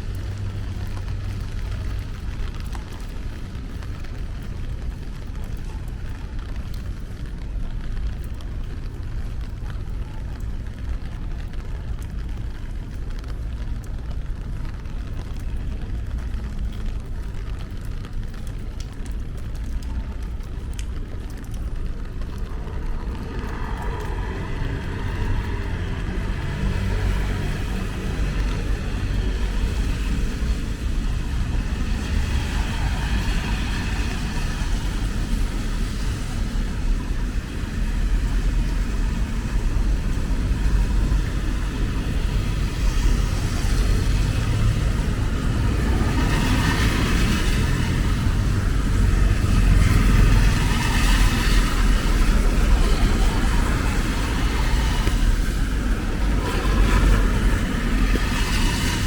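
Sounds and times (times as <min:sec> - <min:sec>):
passing cars rumbling: 0:20.7 - 0:59.0.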